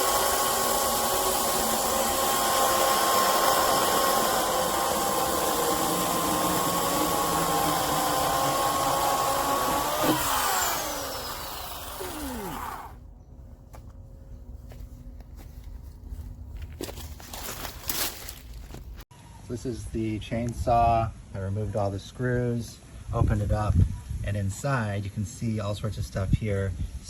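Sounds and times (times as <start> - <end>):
electric chainsaw whining: 0.0 - 13.0.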